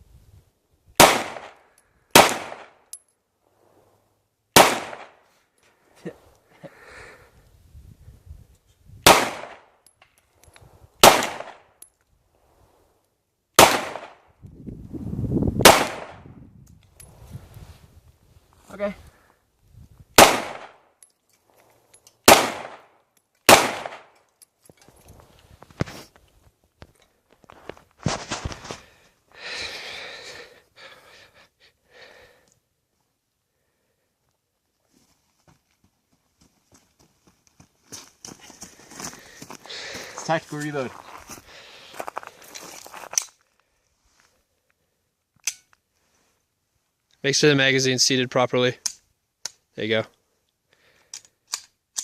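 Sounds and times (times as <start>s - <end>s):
pistol shots with echo: 1.0s - 1.6s, 2.2s - 2.8s, 4.6s - 5.2s, 9.0s - 9.7s, 11.0s - 11.6s, 13.6s - 14.2s, 15.6s - 16.2s, 20.2s - 20.8s, 22.3s - 22.9s, 23.5s - 24.1s
breathy gasp: 39.2s - 40.2s.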